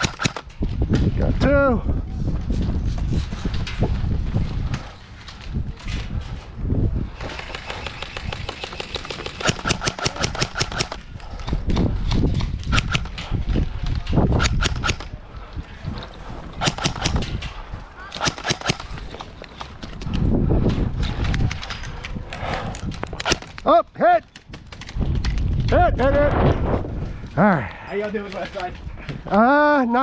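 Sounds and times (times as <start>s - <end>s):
airsoft guns firing: 0.0s - 0.5s, 7.2s - 11.0s, 16.6s - 17.3s, 18.0s - 19.0s.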